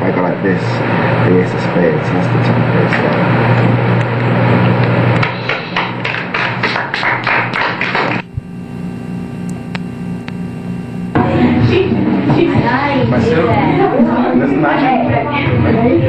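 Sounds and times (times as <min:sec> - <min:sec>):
steady hum: 0:00.0 - 0:16.0
audience applauding: 0:05.2 - 0:08.3.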